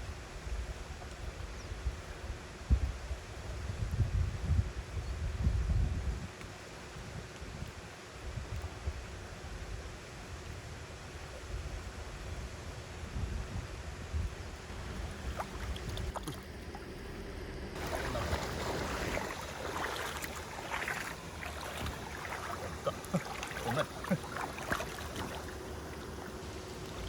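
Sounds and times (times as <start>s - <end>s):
river water sloshing: 14.7s - 27.0s
short splashes and knocks: 15.2s - 16.9s, 17.8s - 27.0s.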